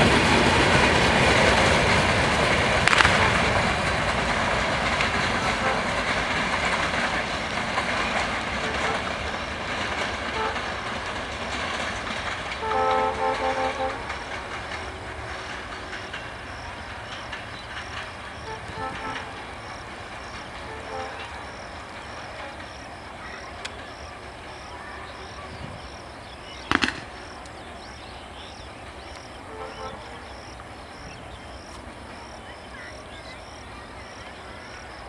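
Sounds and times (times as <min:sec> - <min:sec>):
train rumbling on rails: 0:00.0 - 0:35.0
train horn short blasts: 0:05.4 - 0:06.0, 0:10.3 - 0:10.8, 0:12.5 - 0:14.2, 0:18.4 - 0:19.4, 0:20.6 - 0:21.5, 0:29.5 - 0:30.3.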